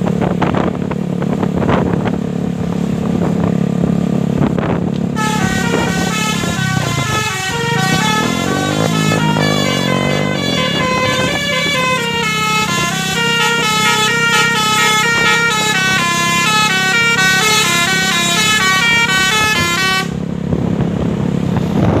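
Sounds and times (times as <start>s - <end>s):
musical air horn melody: 5.1s - 20.2s.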